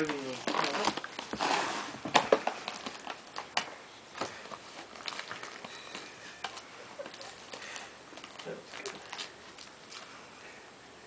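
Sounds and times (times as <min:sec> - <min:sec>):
wrapping paper ripping: 0:00.0 - 0:03.5, 0:07.0 - 0:10.1.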